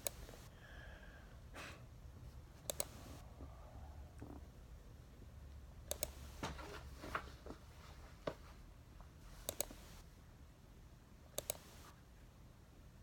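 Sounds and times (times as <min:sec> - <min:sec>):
low steady hum: 0:00.0 - 0:13.0
sharp double clicks: 0:02.7 - 0:03.0, 0:05.9 - 0:06.2, 0:11.4 - 0:11.7.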